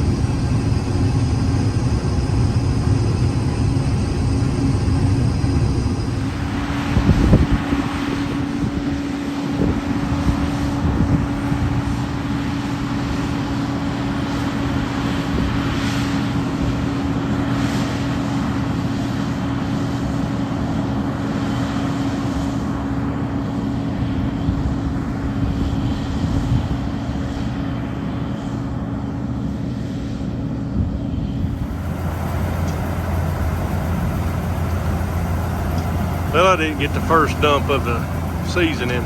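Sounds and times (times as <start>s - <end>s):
vehicle engine droning: 0.0s - 12.6s, 31.3s - 39.0s.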